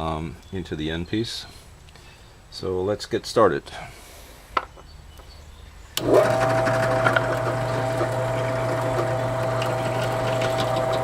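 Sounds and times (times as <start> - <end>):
drill press motor humming: 6.0 - 11.0.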